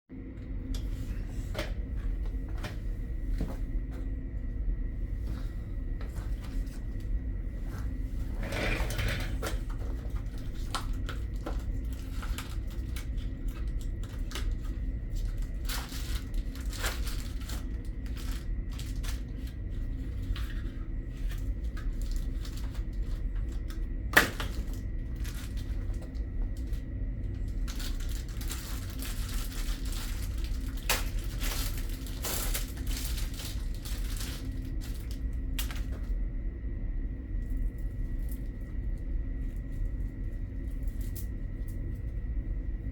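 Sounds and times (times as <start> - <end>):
steady low hum: 0.1 - 42.9.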